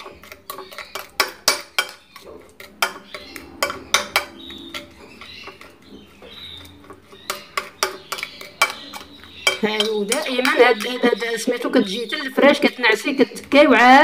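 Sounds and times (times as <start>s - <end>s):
spoon clinking against a dish: 0.0s - 13.7s.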